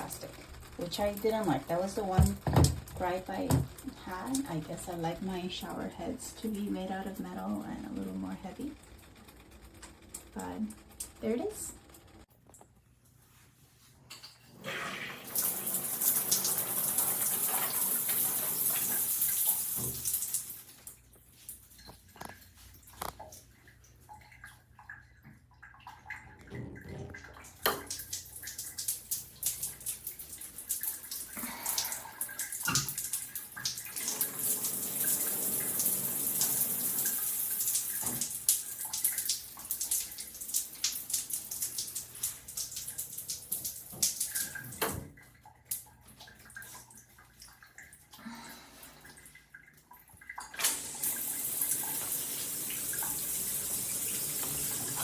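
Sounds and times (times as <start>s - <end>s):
shower spraying water: 0.0s - 8.7s, 14.6s - 21.7s, 27.6s - 44.9s, 50.5s - 55.0s
water dripping: 0.0s - 12.7s, 15.3s - 55.0s.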